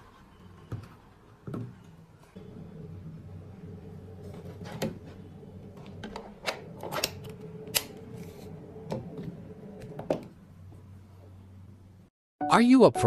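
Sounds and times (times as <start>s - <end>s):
steady low hum: 2.4s - 12.1s.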